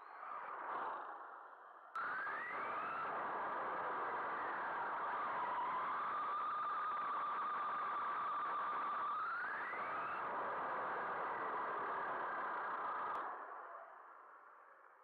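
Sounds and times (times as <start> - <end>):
rc car motor whine: 2.0 - 14.0.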